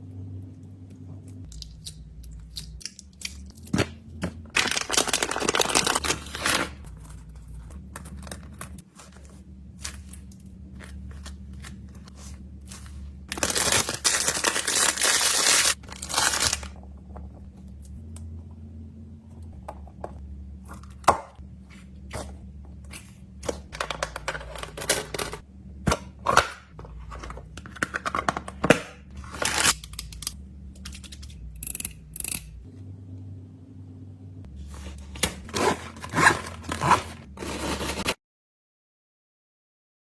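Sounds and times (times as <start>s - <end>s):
plastic packaging rustling: 4.5s - 16.8s, 34.7s - 38.2s.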